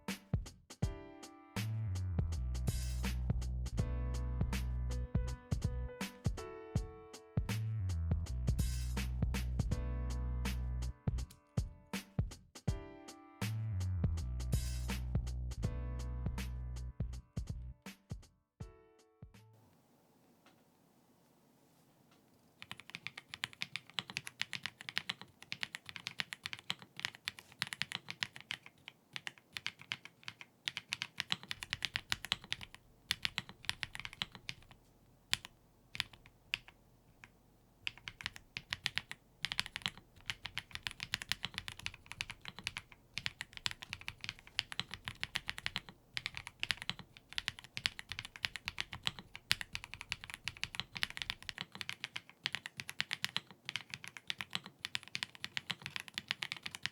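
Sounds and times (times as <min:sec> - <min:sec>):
mechanical keyboard typing: 0:22.6 - 0:56.9.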